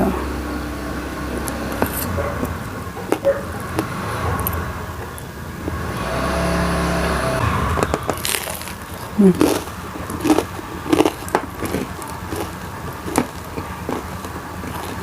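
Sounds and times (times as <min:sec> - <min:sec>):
vehicle engine humming: 0:00.0 - 0:15.0.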